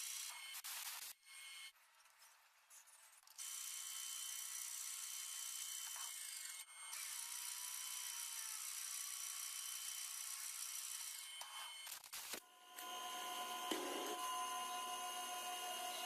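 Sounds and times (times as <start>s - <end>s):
high-speed power tool whine: 3.4s - 16.0s.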